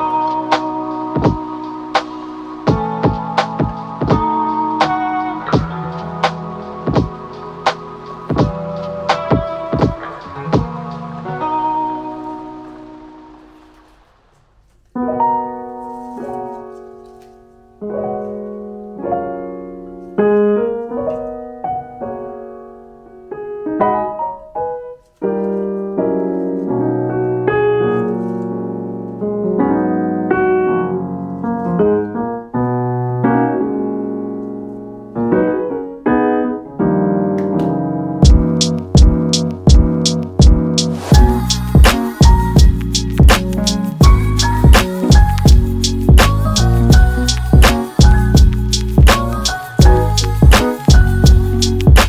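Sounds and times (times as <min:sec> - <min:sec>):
solo piano piece: 0:00.0 - 0:52.0
drum beat: 0:02.7 - 0:10.8, 0:38.2 - 0:52.0.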